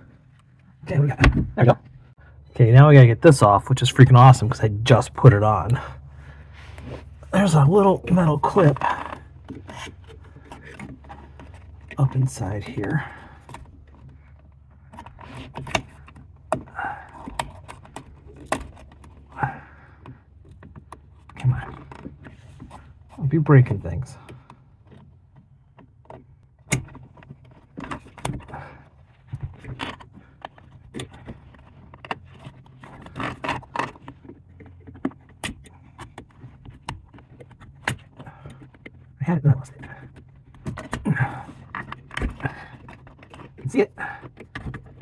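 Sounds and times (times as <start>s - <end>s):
steady low hum: 0.0s - 26.6s.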